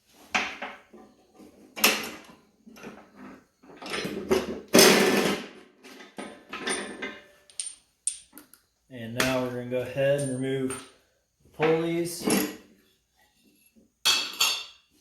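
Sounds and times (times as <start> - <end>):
socket wrench clanking and scraping: 6.2 - 8.5.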